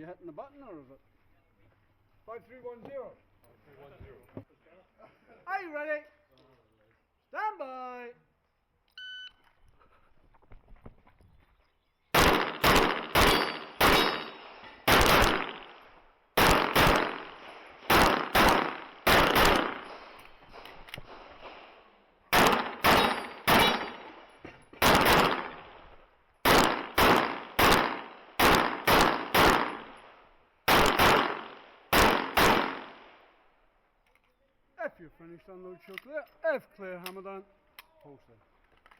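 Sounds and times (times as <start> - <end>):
shot timer beep: 9.0 - 9.4
handgun shots: 12.2 - 15.8, 16.4 - 20.0, 22.3 - 24.2, 24.8 - 25.7, 26.4 - 30.0, 30.7 - 33.0.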